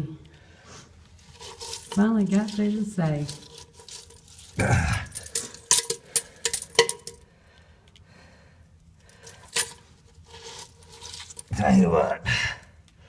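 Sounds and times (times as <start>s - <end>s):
coins clinking: 1.3s - 7.2s, 9.1s - 11.5s.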